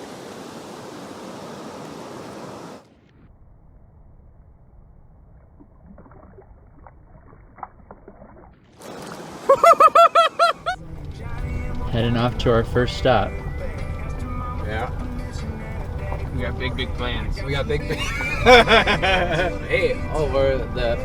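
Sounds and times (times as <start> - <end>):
rushing river water: 0.0 - 2.8, 6.1 - 11.1
low rumble: 3.1 - 7.7.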